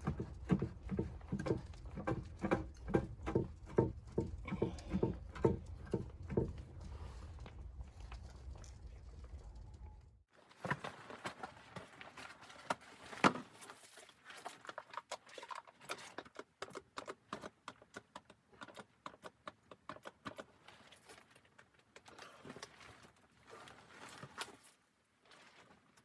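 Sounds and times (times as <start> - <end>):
sharp clicks and knocks: 0.0 - 6.9
low rumble: 0.0 - 10.2.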